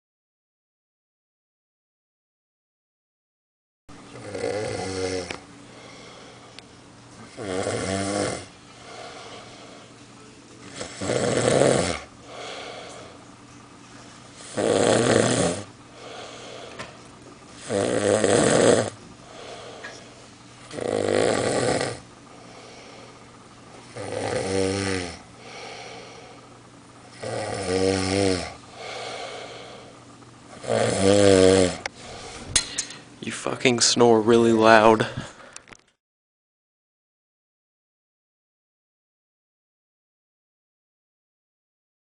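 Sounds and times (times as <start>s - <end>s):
man snoring loudly: 4.1s - 5.4s, 7.3s - 9.2s, 10.7s - 13.1s, 14.4s - 16.6s, 17.6s - 19.8s, 20.7s - 22.8s, 23.9s - 26.4s, 27.1s - 29.9s, 30.5s - 31.9s.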